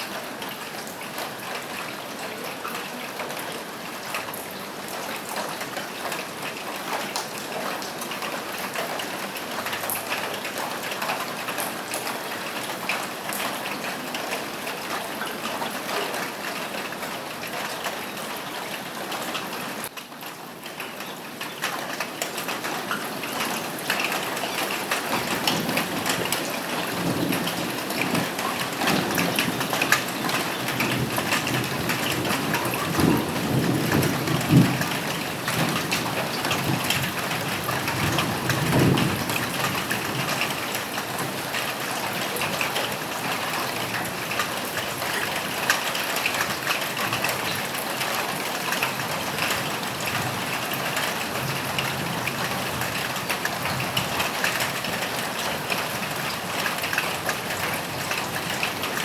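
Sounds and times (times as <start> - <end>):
rain on a roof: 0.0 - 59.0
thunder rumbling: 24.3 - 40.0.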